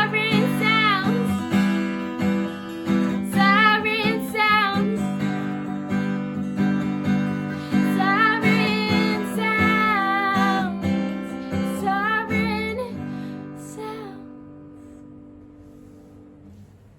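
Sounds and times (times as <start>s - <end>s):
woman singing: 0.0s - 5.8s, 7.3s - 14.4s
acoustic guitar strumming: 0.0s - 16.6s.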